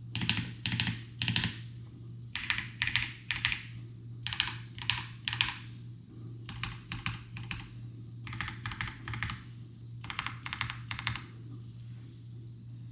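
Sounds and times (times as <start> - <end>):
mechanical keyboard typing: 0.1 - 1.6, 2.4 - 5.7, 6.5 - 9.4, 10.0 - 11.3.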